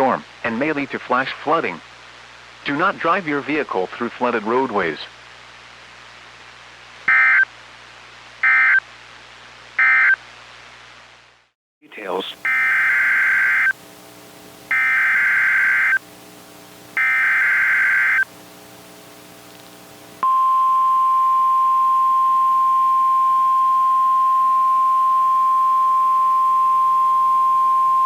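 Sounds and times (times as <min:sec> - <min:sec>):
steady weather radio alarm tone: 0:07.1 - 0:07.5, 0:08.4 - 0:08.8, 0:09.8 - 0:10.2, 0:11.9 - 0:13.8, 0:14.7 - 0:16.0, 0:17.0 - 0:18.3, 0:20.2 - 0:28.0
screechy digital data tones: 0:12.4 - 0:13.7, 0:14.7 - 0:16.0, 0:17.0 - 0:18.3.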